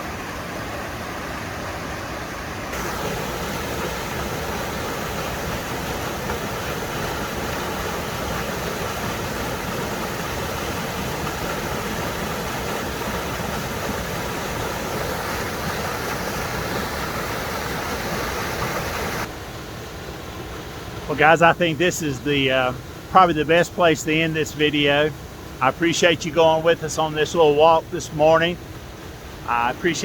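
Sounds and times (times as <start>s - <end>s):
waterfall rushing: 0.0s - 19.3s, 29.0s - 30.0s.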